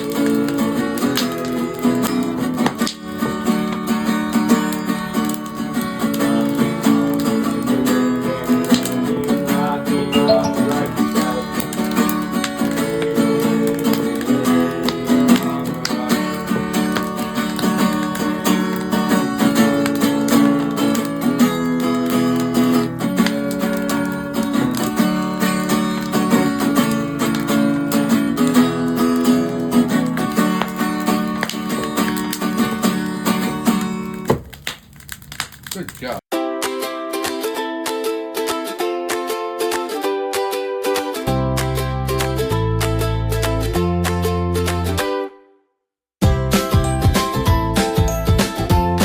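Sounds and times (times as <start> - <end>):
acoustic guitar strumming: 0.0 - 34.2.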